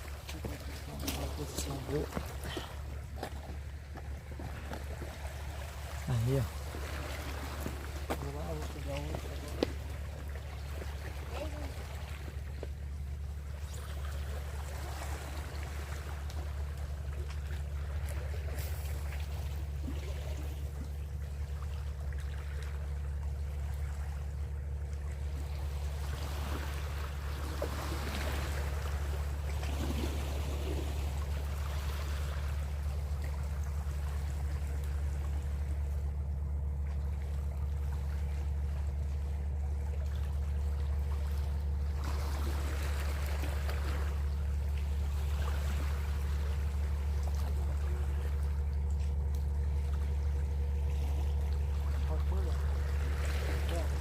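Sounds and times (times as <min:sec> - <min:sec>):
boat motor humming: 0:00.0 - 0:54.0
water splashing against hull: 0:00.0 - 0:54.0.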